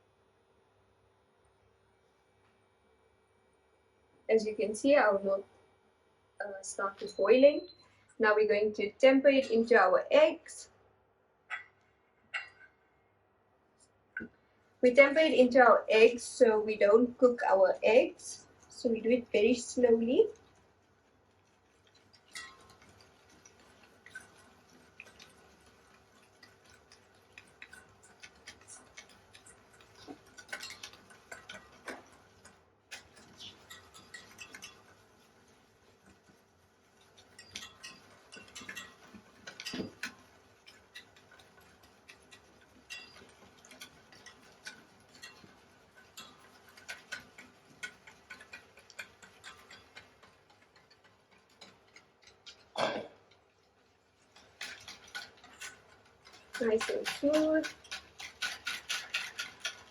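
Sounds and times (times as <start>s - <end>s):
whisk clicking against a bowl: 21.4s - 59.9s.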